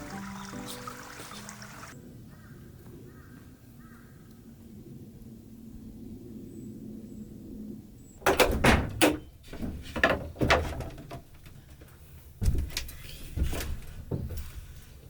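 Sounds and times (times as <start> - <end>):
irregular knocks and clatters: 8.2 - 14.9.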